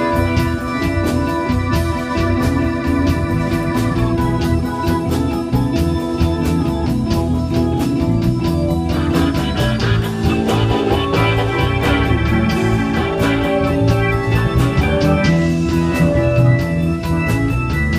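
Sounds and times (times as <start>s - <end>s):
bass: 0.0s - 17.9s
drum strokes: 0.0s - 17.9s
lead instrument part: 0.0s - 17.9s
organ sustained chords: 0.0s - 17.9s.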